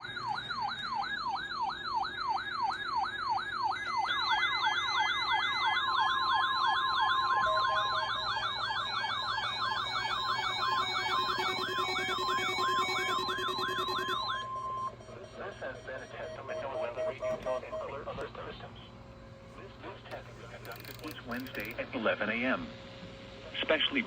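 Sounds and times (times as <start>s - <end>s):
falling siren wail: 0.0s - 17.8s
faster siren wail: 0.0s - 17.8s
steady alarm tone: 0.0s - 18.2s.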